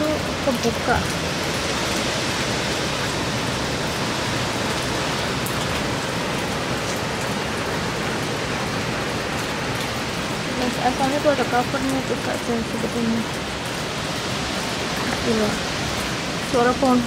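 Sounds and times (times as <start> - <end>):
strong wind and rain rushing: 0.0 - 17.0.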